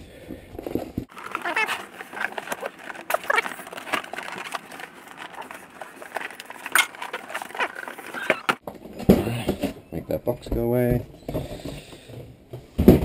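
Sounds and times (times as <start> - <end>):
cardboard box scraping and rustling: 1.1 - 8.6
cardboard squeaks: 1.1 - 8.6.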